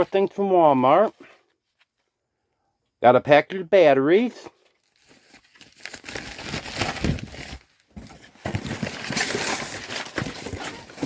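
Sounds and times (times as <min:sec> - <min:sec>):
packaging crinkling: 0:04.8 - 0:11.0.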